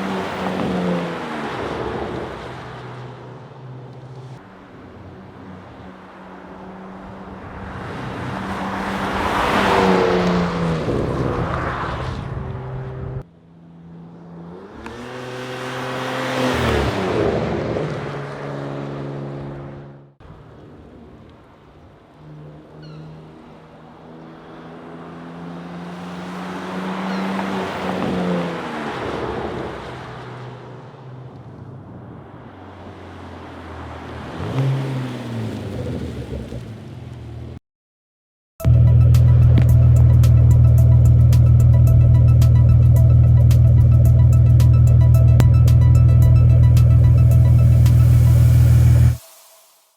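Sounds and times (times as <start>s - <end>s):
car driving past: 4.0s - 20.2s, 38.6s - 49.7s.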